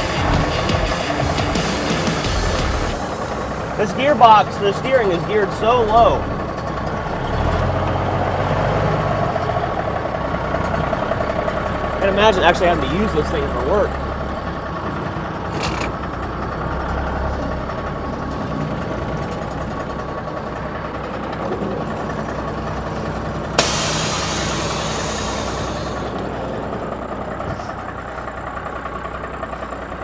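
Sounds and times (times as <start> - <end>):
truck engine idling: 0.0 - 30.0
air brake hiss: 23.6 - 26.3.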